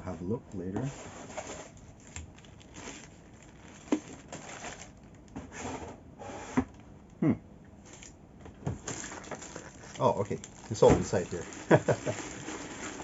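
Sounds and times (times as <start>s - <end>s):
packaging rustling: 1.3s - 5.4s, 8.8s - 13.0s.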